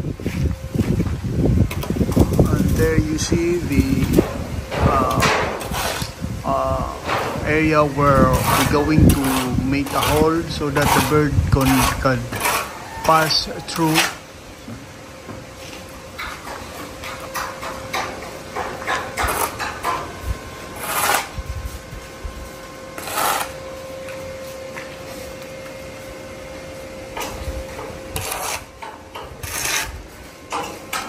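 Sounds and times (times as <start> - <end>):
faint steady hum: 0.0 - 31.0
rasping hand tool scrapes: 8.3 - 12.8, 20.8 - 21.3, 23.0 - 23.5, 29.4 - 30.0.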